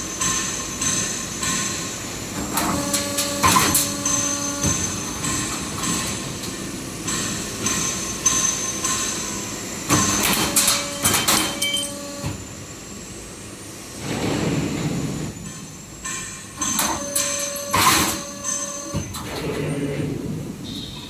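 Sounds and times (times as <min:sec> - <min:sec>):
steady machine noise with tones: 0:00.0 - 0:21.0
metallic knocks and clanks: 0:02.4 - 0:09.0, 0:16.1 - 0:19.7.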